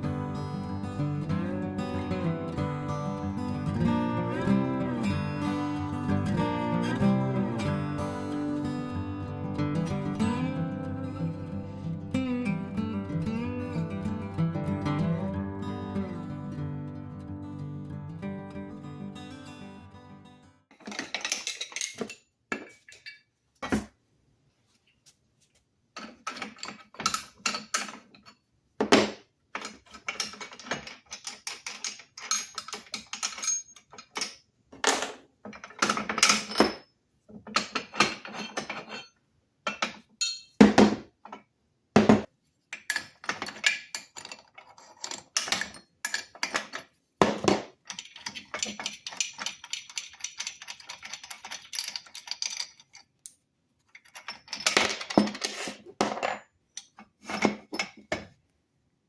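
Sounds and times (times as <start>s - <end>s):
metal tools clinking and knocking: 20.7s - 23.9s, 26.0s - 28.5s, 29.5s - 41.4s, 42.7s - 58.2s.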